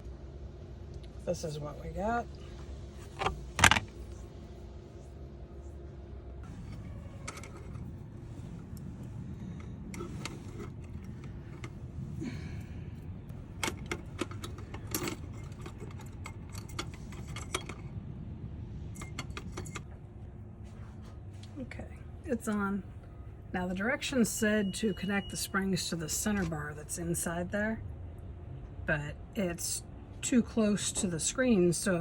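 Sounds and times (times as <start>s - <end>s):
metallic clicks and scrapes: 2.9s - 4.4s, 6.4s - 12.3s, 13.3s - 18.0s, 18.9s - 20.0s.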